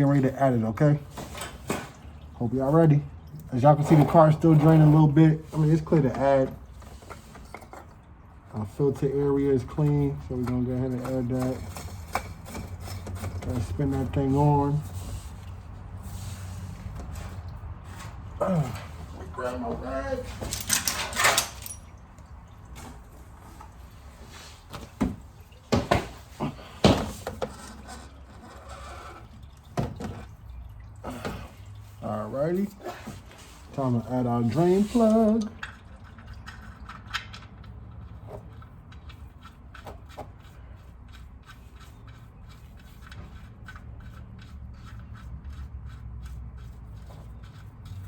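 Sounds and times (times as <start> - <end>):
knocks and clunks of objects handled: 1.1 - 2.3, 9.6 - 16.0, 16.6 - 28.4, 29.6 - 30.4.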